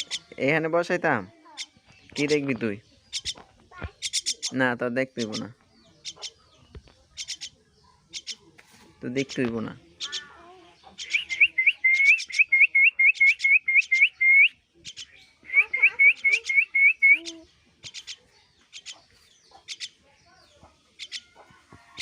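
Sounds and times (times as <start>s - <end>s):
chick whistled begging calls: 10.0s - 20.0s.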